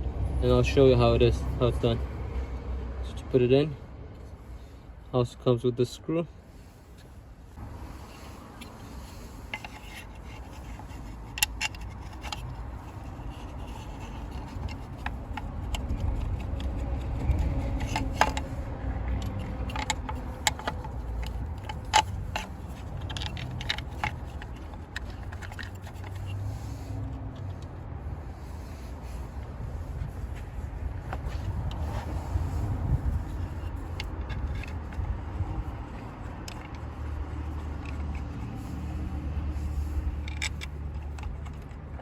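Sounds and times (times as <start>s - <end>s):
clicks taps and scrapes of parts: 7.9s - 27.8s, 28.4s - 42.0s.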